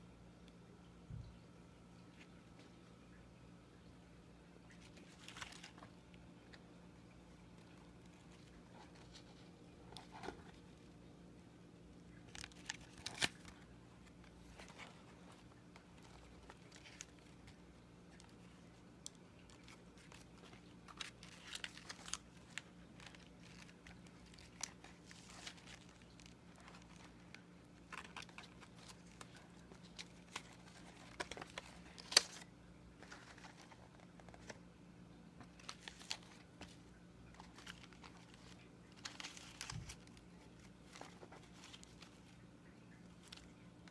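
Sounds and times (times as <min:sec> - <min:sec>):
faint steady hum: 0:00.0 - 0:43.9
paper crinkling and tearing: 0:04.7 - 0:06.6, 0:12.1 - 0:34.6, 0:35.4 - 0:42.4.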